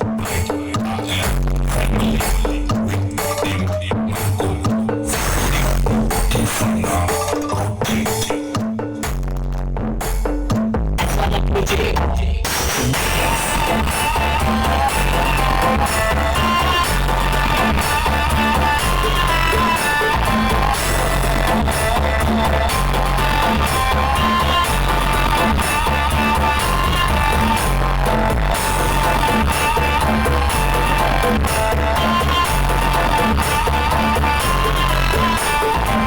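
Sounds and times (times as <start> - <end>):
loud music with pounding bass: 0.0 - 36.0.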